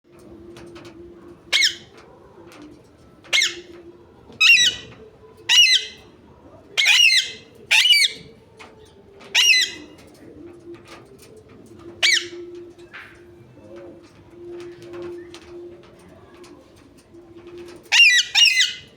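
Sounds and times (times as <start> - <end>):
parrot squawking: 6.8 - 8.2, 17.9 - 18.9.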